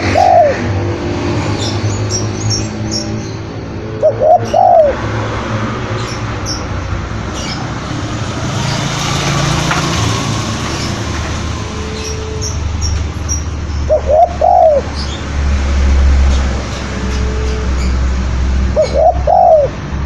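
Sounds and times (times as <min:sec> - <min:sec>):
dove cooing: 0:00.0 - 0:00.9, 0:03.7 - 0:05.6, 0:13.8 - 0:15.1, 0:18.7 - 0:19.8
small birds chirping: 0:11.8 - 0:15.3.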